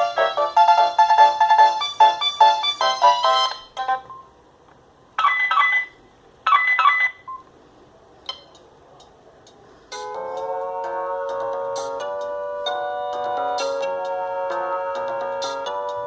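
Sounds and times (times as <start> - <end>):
electronic ringtone melody: 0.0 - 4.3, 5.2 - 7.4, 9.9 - 16.0
phone ringing bursts: 5.2 - 7.3.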